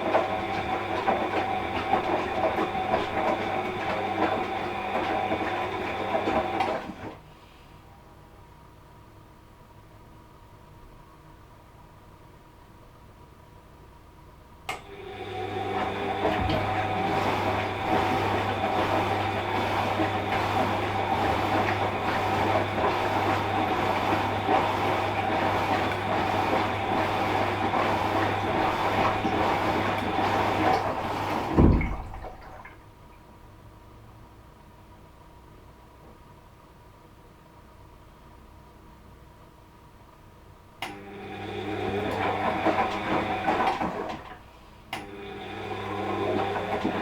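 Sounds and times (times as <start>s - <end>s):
washing machine motor humming: 0.0s - 7.3s, 14.6s - 33.0s, 40.8s - 47.0s
water sloshing in drum: 15.8s - 33.0s
washing machine thump: 16.1s - 32.6s.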